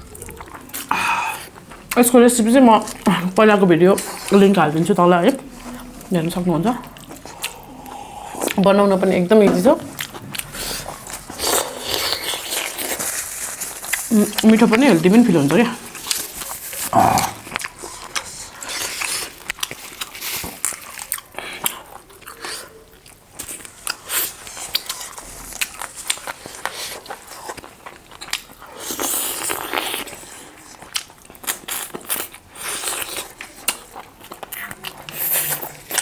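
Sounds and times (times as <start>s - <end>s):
crunchy chewing: 3.9s - 36.0s.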